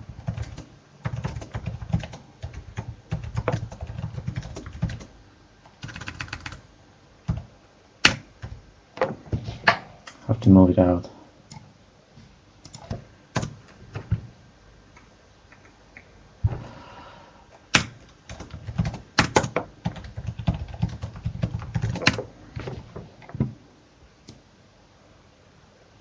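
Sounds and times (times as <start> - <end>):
keyboard typing: 0.0 - 5.1, 5.7 - 6.6, 7.3 - 8.6, 12.6 - 14.3, 15.0 - 16.1, 17.7 - 23.5.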